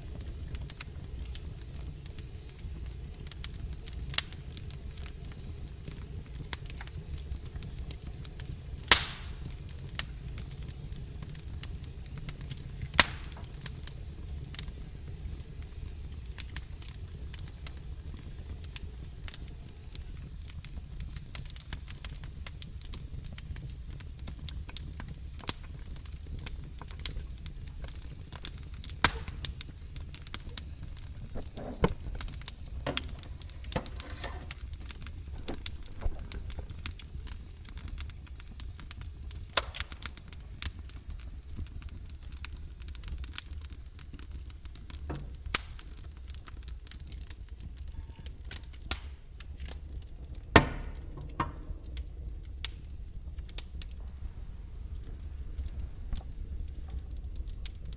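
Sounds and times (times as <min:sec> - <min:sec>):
fire crackling and popping: 0:00.0 - 0:57.9
low steady rumble: 0:22.1 - 0:38.9, 0:49.2 - 0:57.9.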